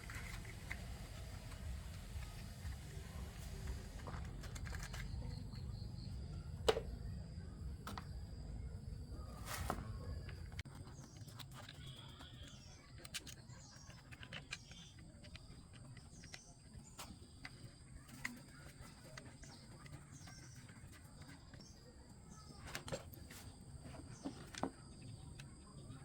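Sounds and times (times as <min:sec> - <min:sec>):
birds chirping: 0:00.0 - 0:26.0.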